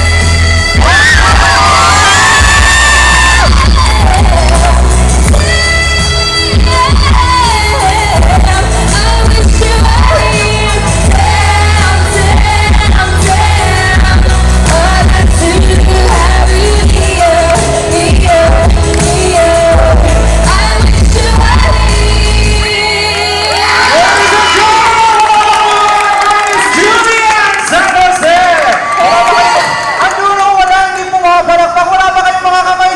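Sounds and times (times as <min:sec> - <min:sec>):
loud music with heavy bass: 0:00.0 - 0:25.3
live pop singing: 0:00.0 - 0:26.5.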